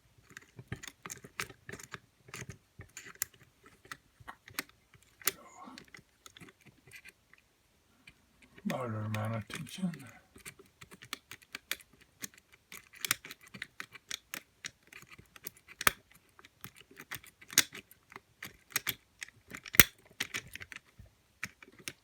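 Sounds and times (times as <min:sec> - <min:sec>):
lock picking tools clicking and scraping: 0:00.2 - 0:07.2, 0:10.3 - 0:22.0.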